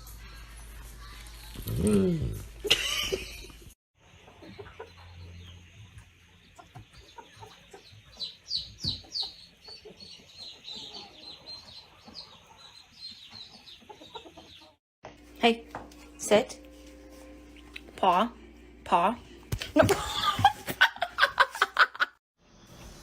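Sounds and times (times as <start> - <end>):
birds chirping: 4.0 - 14.8.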